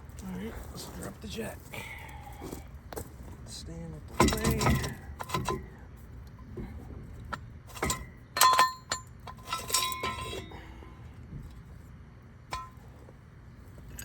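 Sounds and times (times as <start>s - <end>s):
steel jack stand clanking: 4.2s - 5.8s, 6.4s - 10.8s, 12.5s - 13.1s.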